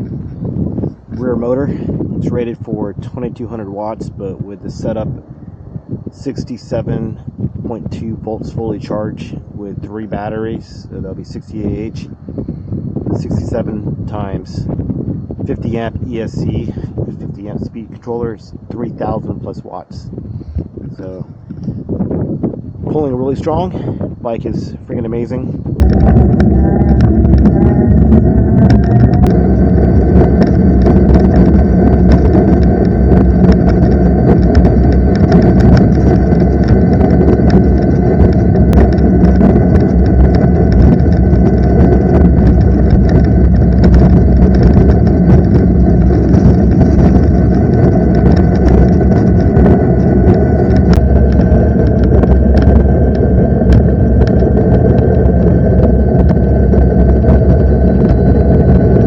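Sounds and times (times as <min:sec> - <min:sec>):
wind and road noise: 0:00.0 - 0:59.0
electric motor whine: 0:25.0 - 0:59.0.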